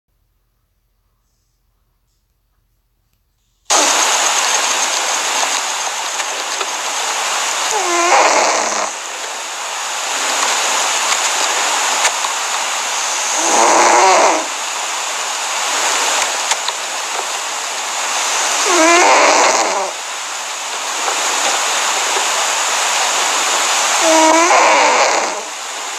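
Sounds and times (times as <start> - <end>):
cat snoring: 3.7 - 5.5, 6.2 - 9.2, 13.0 - 14.6, 18.2 - 20.0, 24.0 - 25.6.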